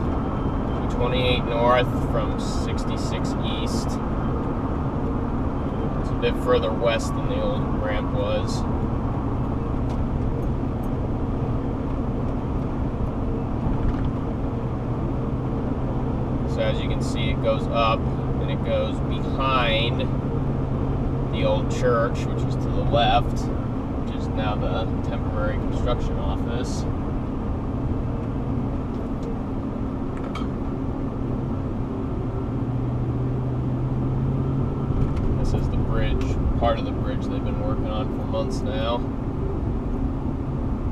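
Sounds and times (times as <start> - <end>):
car tyre and engine drone: 0.0 - 40.9.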